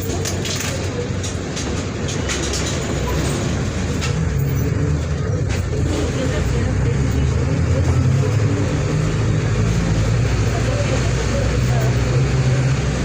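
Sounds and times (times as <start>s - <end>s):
rattles: 0.0s - 7.3s
bus diesel engine running: 0.0s - 13.0s.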